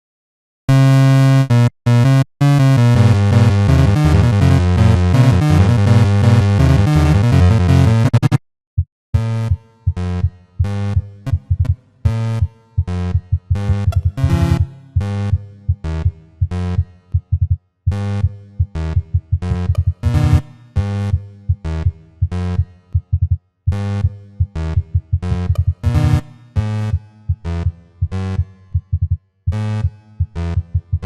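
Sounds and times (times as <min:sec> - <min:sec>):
harsh synthesized alarm chord: 0:00.7 - 0:08.2, 0:09.2 - 0:15.4, 0:19.5 - 0:21.2.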